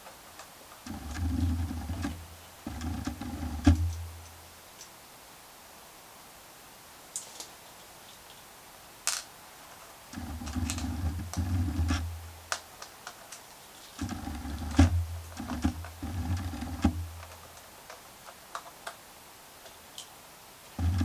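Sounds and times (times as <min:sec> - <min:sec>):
screws clicking on plastic case: 0:10.2 - 0:13.2.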